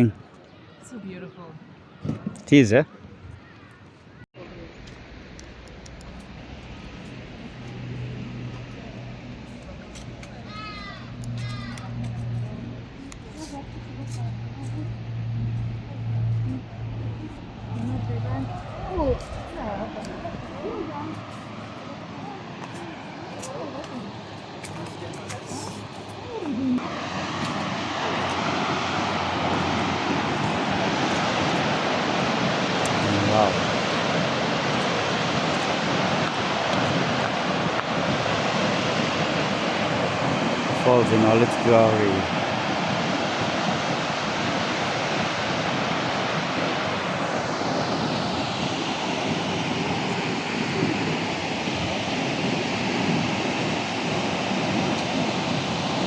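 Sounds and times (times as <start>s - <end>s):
waterfall roaring: 4.4s - 56.0s.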